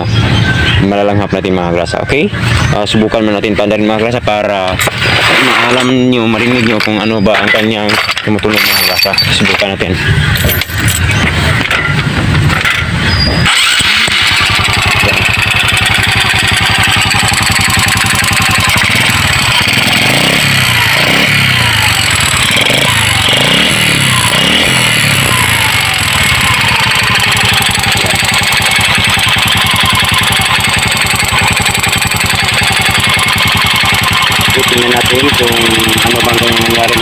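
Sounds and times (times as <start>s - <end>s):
motorcycle engine revving: 0.0s - 37.0s
engine ticking knock: 13.6s - 23.6s, 25.2s - 37.0s.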